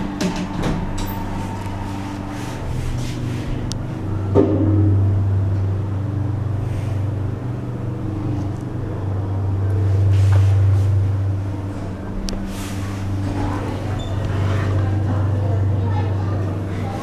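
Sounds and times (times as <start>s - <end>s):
road vehicle droning: 0.0s - 17.0s.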